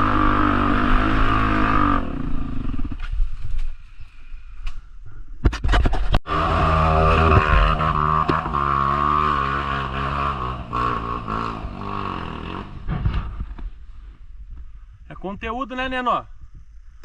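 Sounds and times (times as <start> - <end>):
motorcycle engine revving: 0.0 - 3.1, 6.2 - 13.6.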